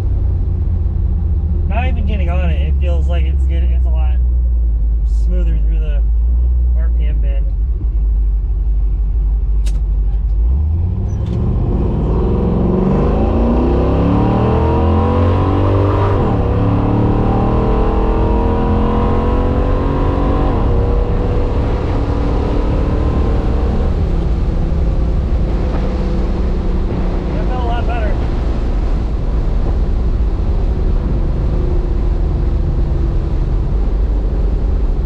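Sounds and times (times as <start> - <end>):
car engine accelerating hard: 9.6 - 35.0.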